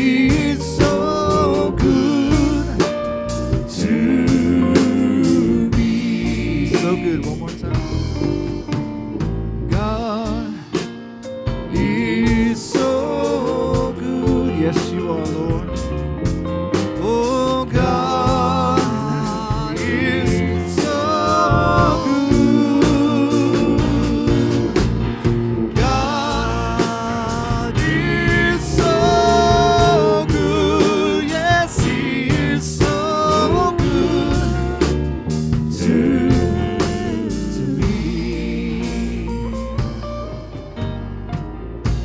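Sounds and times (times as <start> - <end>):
band with guitar: 0.0 - 42.0.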